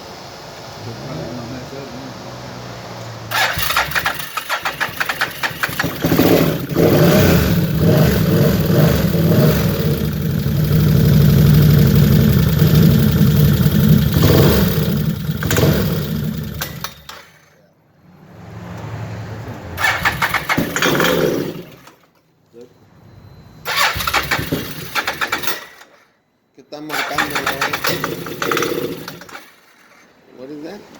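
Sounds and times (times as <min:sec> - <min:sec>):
atv engine running: 0:03.3 - 0:17.4, 0:19.8 - 0:22.0, 0:23.7 - 0:26.0, 0:26.9 - 0:30.1
starter cranking: 0:03.3 - 0:17.6, 0:19.8 - 0:22.2, 0:23.7 - 0:26.1, 0:26.9 - 0:30.2.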